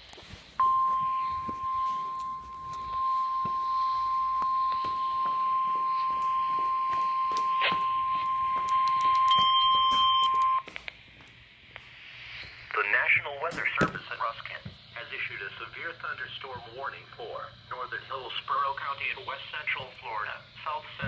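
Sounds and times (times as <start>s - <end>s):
steady high alarm tone: 0.6s - 10.7s.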